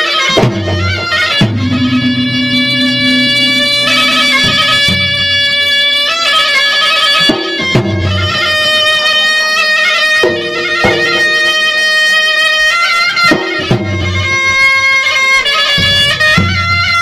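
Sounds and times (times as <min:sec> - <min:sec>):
shrill double-reed pipe: 0:00.8 - 0:06.0, 0:10.2 - 0:12.6
drumming: 0:01.3 - 0:05.5, 0:10.2 - 0:12.2.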